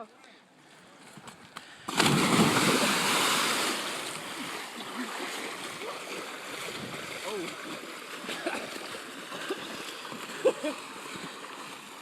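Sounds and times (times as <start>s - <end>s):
loud splash into river: 1.9s - 7.3s
churning water rushing: 1.9s - 12.0s.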